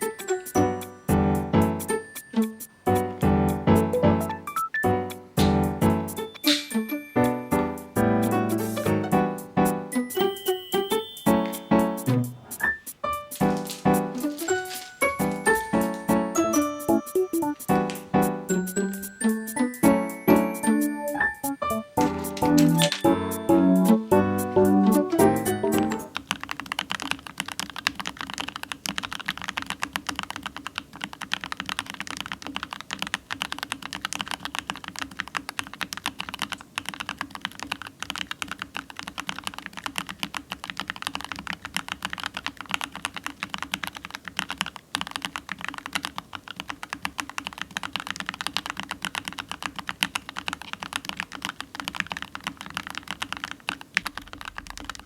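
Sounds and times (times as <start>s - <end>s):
mechanical keyboard typing: 12.6s - 19.5s, 20.4s - 23.8s, 24.6s - 55.0s.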